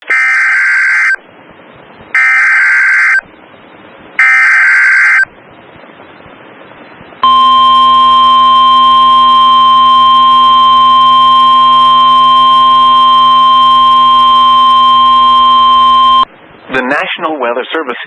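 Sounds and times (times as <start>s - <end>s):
screeching data tones: 0.1s - 1.2s, 2.2s - 3.2s, 4.2s - 5.3s, 7.2s - 16.3s
steady alert tone: 7.2s - 16.3s.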